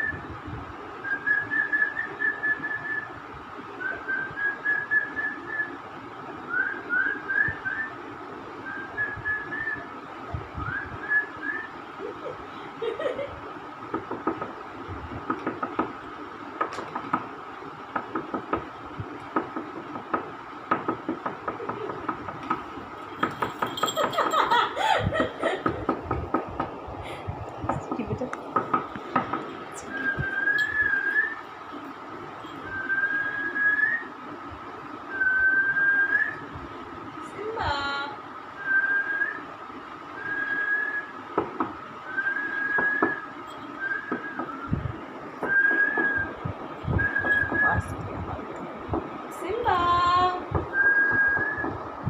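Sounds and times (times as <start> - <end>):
person whistling: 29.8 - 31.4, 45.4 - 46.4, 50.7 - 51.8.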